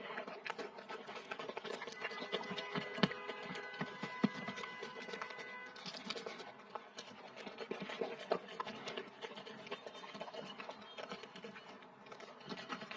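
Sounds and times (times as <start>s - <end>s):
dog crunching food: 0.0s - 12.9s.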